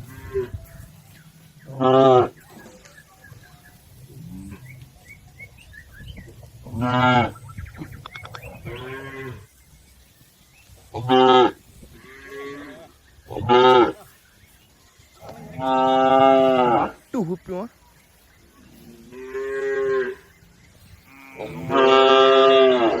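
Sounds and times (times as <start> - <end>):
cows mooing: 0.0 - 0.8, 1.7 - 2.4, 8.4 - 9.5, 11.0 - 14.1, 15.2 - 17.1, 18.7 - 23.0.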